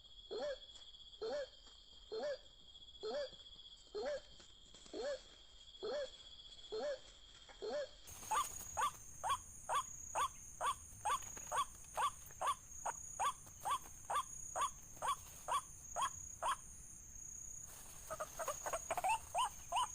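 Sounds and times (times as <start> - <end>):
bird calling repetitive notes: 8.1 - 19.9.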